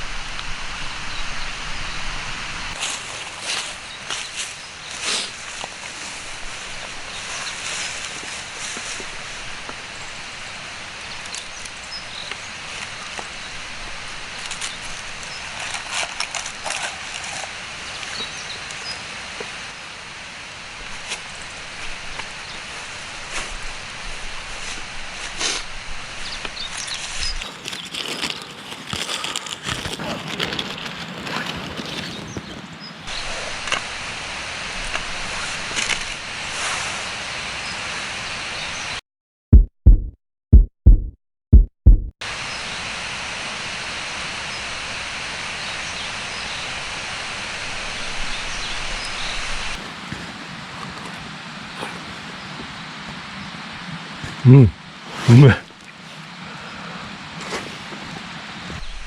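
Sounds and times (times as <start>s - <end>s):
sharp crackles and clicks: 26.4s - 32.6s
steady hiss: 42.3s - 57.4s.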